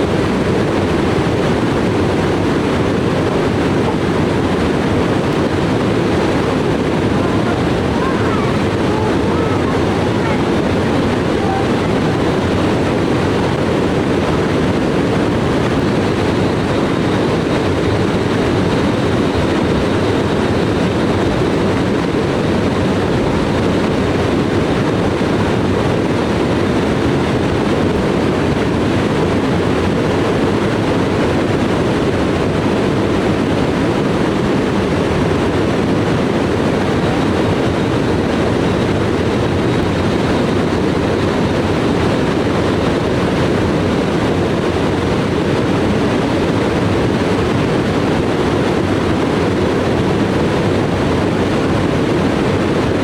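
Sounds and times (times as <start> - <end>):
waterfall rushing into stream: 3.0 - 16.0.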